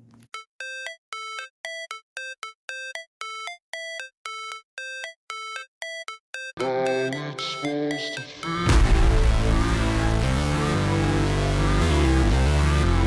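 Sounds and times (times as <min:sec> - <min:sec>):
synthesized beeps: 0:00.4 - 0:10.2
electronic backing track: 0:06.6 - 0:13.0.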